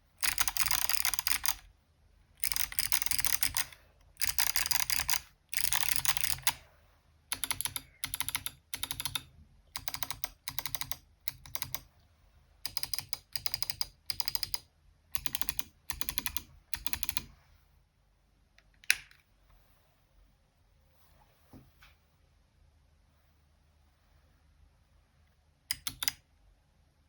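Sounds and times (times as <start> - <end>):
clicky keyboard typing: 0.2 - 1.6, 2.4 - 6.6, 7.3 - 11.9, 12.7 - 17.3, 25.7 - 26.2.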